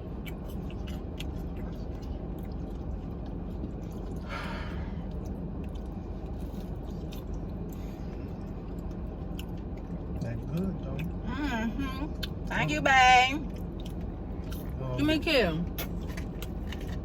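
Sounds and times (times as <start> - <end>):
person chewing: 0.0 - 11.2, 12.1 - 12.5, 13.5 - 14.8.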